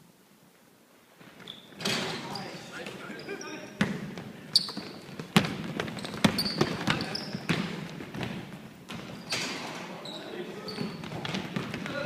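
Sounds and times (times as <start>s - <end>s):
sneakers squeaking on court: 1.2s - 12.0s
basketball bouncing on court: 3.8s - 9.2s, 10.7s - 12.0s.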